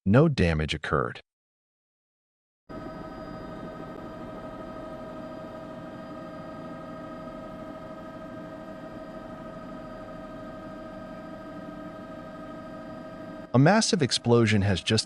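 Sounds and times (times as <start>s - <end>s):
machine hum with whine: 2.7s - 15.0s.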